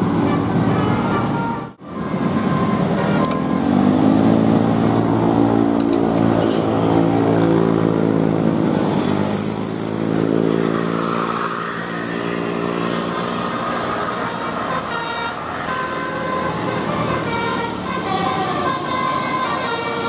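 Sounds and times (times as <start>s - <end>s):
bus engine revving: 0.0s - 20.0s.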